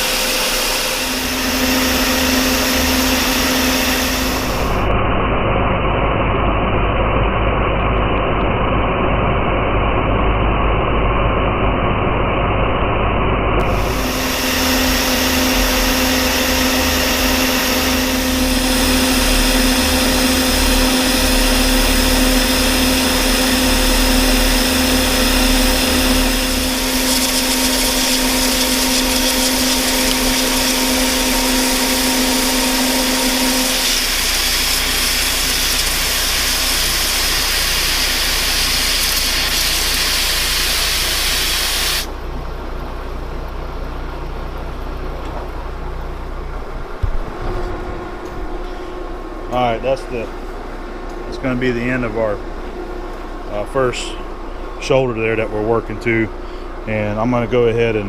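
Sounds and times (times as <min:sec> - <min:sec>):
coolant mist sprayer hiss: 0:00.0 - 0:04.9, 0:13.6 - 0:42.2
metal lathe cutting steel: 0:00.0 - 0:05.0, 0:13.6 - 0:42.1
steady hum: 0:00.0 - 0:58.0.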